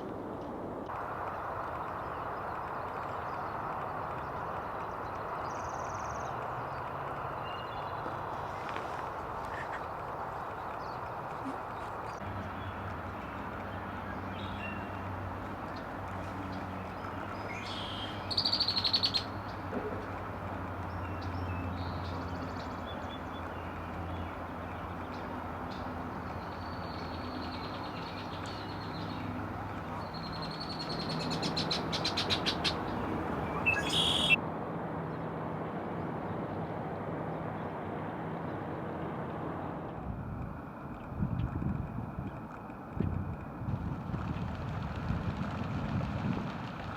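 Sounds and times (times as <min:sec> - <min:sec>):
steady low hum: 0:00.7 - 0:34.4
wild birds chirping: 0:00.9 - 0:34.4.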